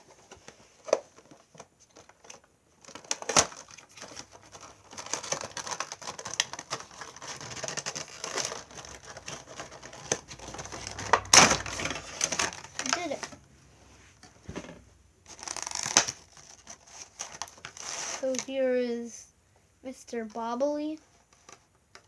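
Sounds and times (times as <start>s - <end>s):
cardboard and plastic crinkling: 0.3s - 13.4s, 15.3s - 18.6s
packaging clicks: 2.0s - 13.2s.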